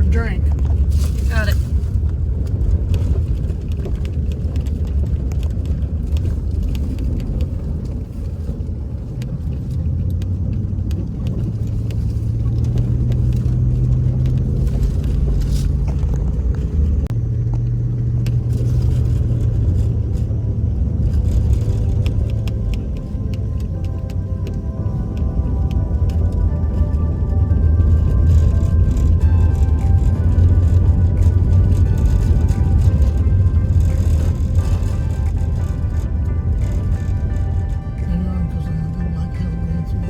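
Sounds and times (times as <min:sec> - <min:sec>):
truck engine and road noise: 0:00.0 - 0:40.0.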